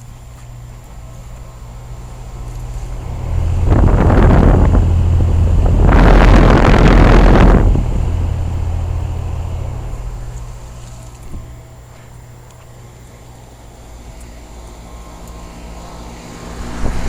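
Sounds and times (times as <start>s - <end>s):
vehicle passing by: 15.4s - 17.0s.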